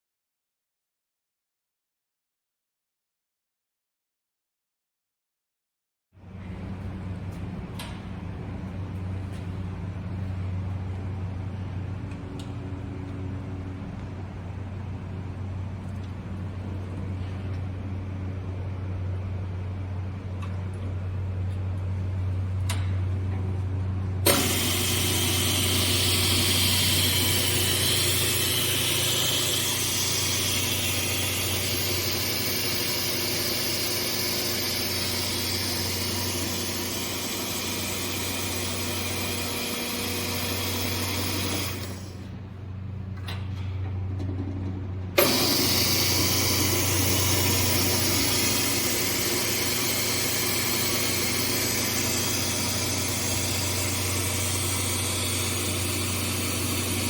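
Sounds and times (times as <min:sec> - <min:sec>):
click: 0:07.7 - 0:08.0, 0:12.1 - 0:12.6, 0:22.6 - 0:23.0
band saw motor hum: 0:23.2 - 0:42.9, 0:45.2 - 0:57.0.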